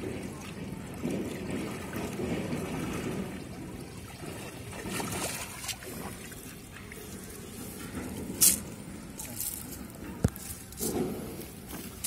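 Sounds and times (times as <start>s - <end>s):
river water trickling and splashing: 0.0s - 12.0s.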